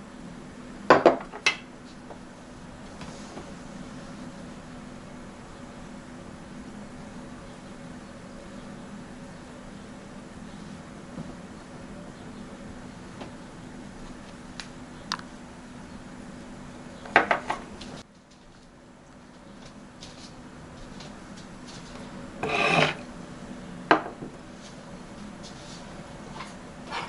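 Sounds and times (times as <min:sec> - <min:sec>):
scraping rub: 0:22.4 - 0:23.0.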